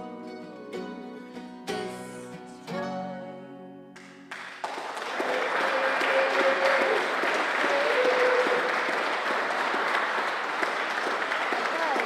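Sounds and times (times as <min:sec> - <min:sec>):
audience applauding: 0:04.0 - 0:12.0.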